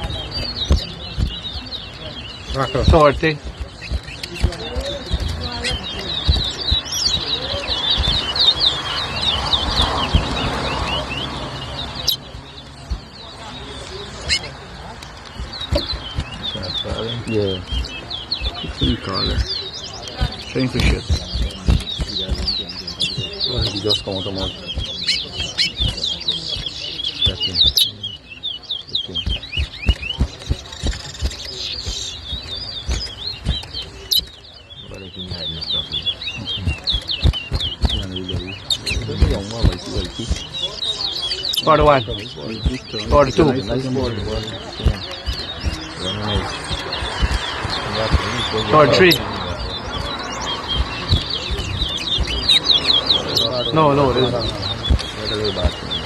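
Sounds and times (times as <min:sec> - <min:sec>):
finch whistling song: 0:00.0 - 0:56.0
low thumps: 0:02.5 - 0:11.0, 0:36.4 - 0:40.8, 0:41.7 - 0:56.0.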